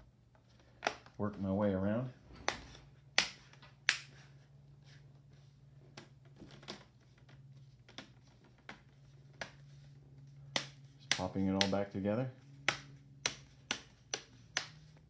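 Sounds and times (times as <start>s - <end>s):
low steady hum: 0.0s - 15.0s
plastic clips snapping: 12.7s - 14.9s.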